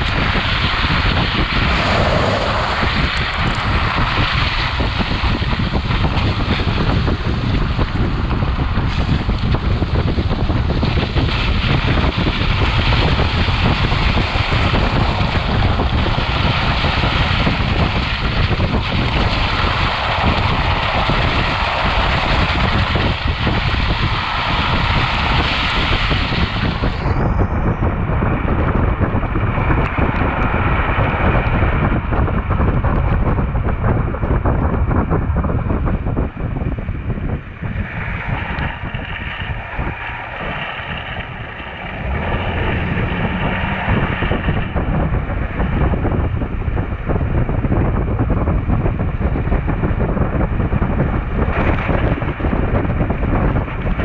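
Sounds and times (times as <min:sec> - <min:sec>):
tyre rumble: 0:00.0 - 0:54.0
wind rushing on microphone: 0:00.0 - 0:54.0.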